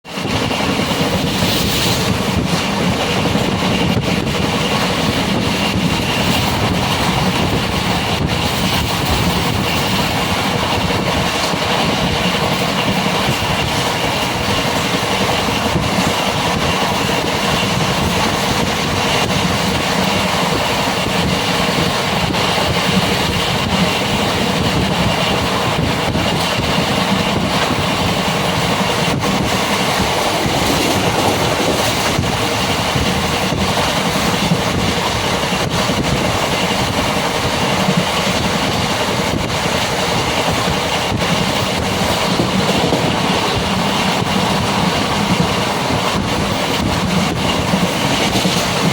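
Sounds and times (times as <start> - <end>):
moving vehicle rumbling: 1.2 - 48.7.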